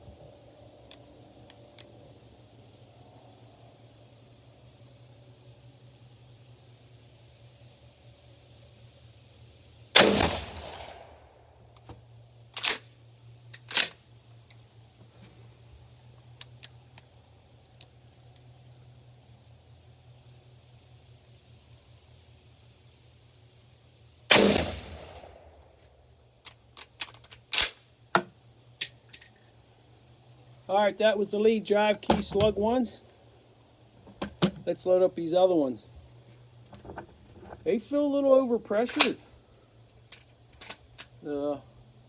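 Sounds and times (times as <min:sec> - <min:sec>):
shotgun shot with echo: 0:10.0 - 0:11.2, 0:24.3 - 0:25.5.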